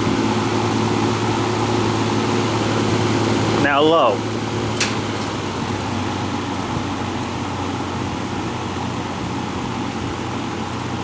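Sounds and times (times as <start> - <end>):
box fan running: 0.0 - 11.0.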